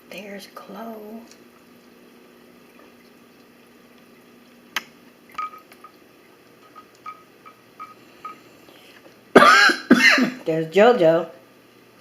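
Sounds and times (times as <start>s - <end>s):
water drips plinking: 1.2s - 8.4s.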